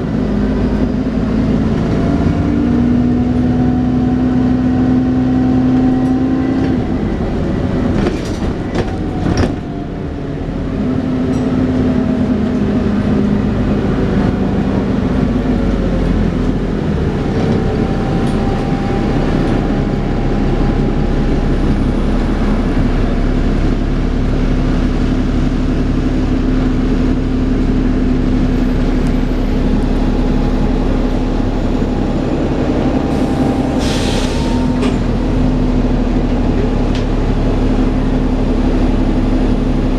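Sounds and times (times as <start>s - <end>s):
bus driveline whine: 0.0s - 39.9s
bus engine drone: 0.0s - 39.9s.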